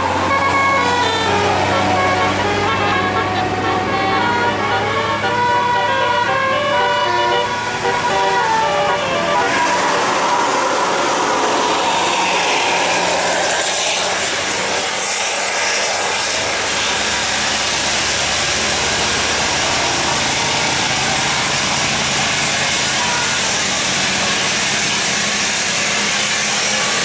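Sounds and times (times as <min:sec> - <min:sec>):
bus engine running: 0:00.0 - 0:27.0
multi-tone bus horn: 0:00.0 - 0:27.0
road noise: 0:00.0 - 0:27.0.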